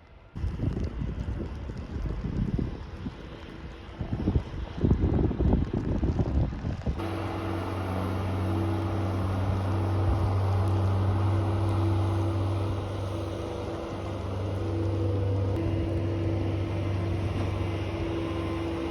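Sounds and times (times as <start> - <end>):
wind buffeting microphone: 0.1 - 18.9
low machine hum: 7.0 - 18.9.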